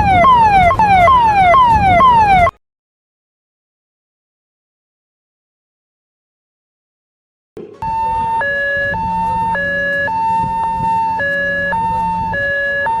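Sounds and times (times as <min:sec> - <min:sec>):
two-tone ambulance siren: 0:00.0 - 0:02.6, 0:07.8 - 0:13.0.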